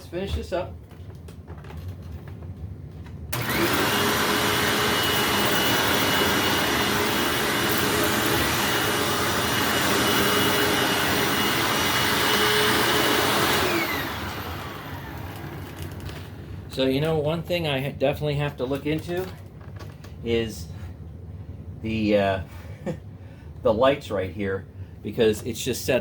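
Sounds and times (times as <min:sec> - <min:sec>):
vacuum cleaner whine: 0:03.3 - 0:16.3
motor spinning down: 0:03.4 - 0:16.0.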